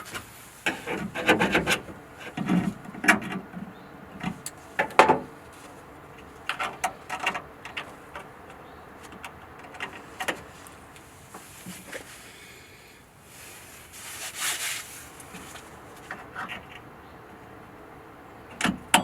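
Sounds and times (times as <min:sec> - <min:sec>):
knocks and scrapes on metal: 0:00.7 - 0:03.4.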